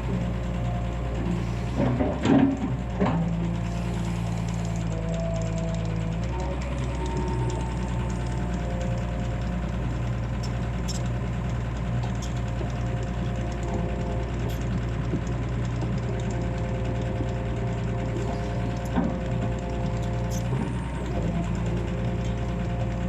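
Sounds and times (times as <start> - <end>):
excavator diesel engine running: 0.0 - 23.0.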